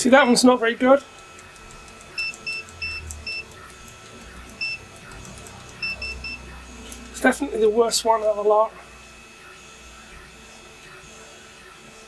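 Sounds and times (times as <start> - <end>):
multimeter continuity beeps: 1.2 - 7.7.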